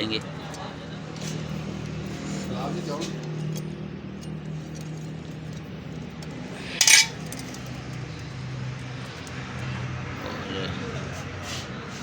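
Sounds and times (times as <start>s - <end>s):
hand tool clattering against metal: 6.8s - 7.6s.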